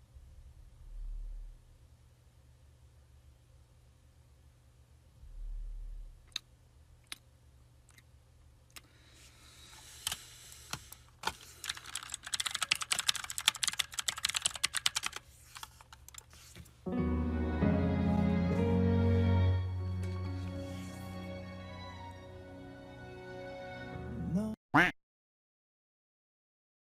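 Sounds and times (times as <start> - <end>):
low hum: 0.0 - 6.9.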